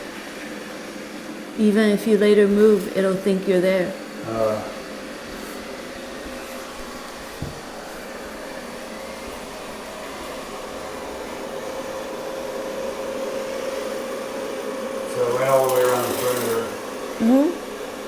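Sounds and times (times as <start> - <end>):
robot vacuum whirring hum: 0.0 - 18.0
faint knock: 7.3 - 7.7.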